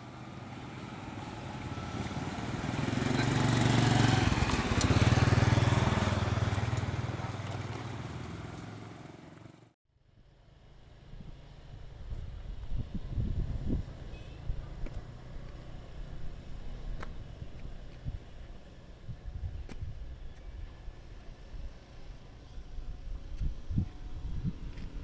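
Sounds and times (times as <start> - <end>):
vehicle engine passing: 0.0 - 9.7
faint road noise: 0.0 - 25.0.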